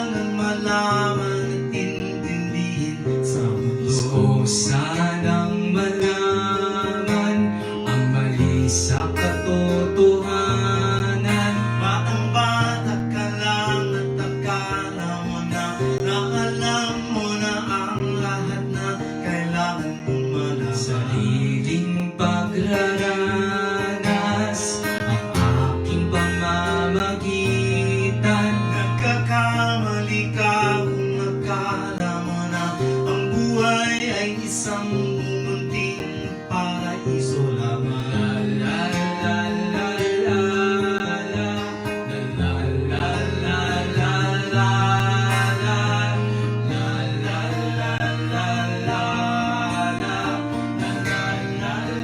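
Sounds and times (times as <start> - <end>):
acoustic guitar ballad: 0.0 - 52.0.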